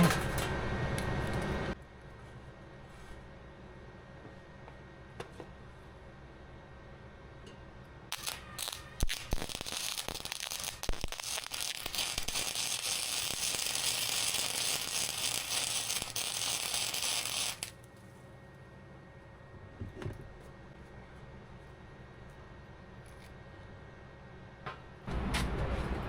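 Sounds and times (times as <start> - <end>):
arc welding crackling: 8.1 - 17.9.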